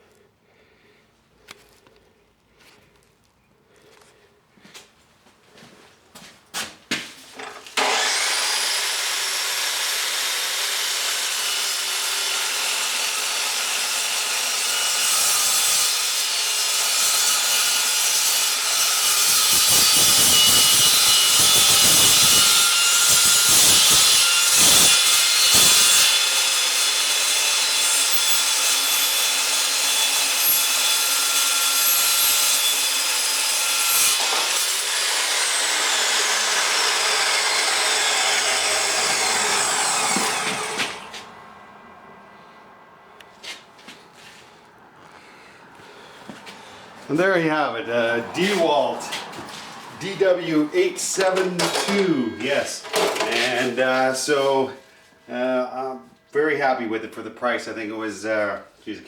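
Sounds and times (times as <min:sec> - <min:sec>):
chop saw whining: 0:07.4 - 0:41.4, 0:50.0 - 0:54.6
saw cutting metal: 0:07.8 - 0:41.4, 0:48.0 - 0:54.7.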